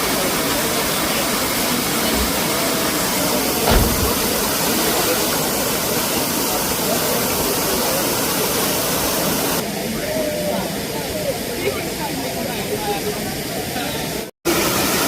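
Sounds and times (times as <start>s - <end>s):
waterfall rushing: 0.0s - 15.0s
short low thump: 3.6s - 4.6s.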